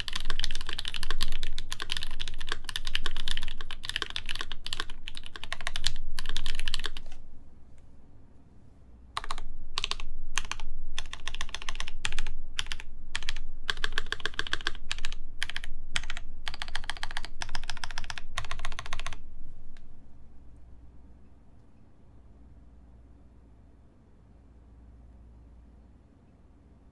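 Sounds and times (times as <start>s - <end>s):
mechanical keyboard typing: 0.0s - 7.2s, 9.2s - 19.9s.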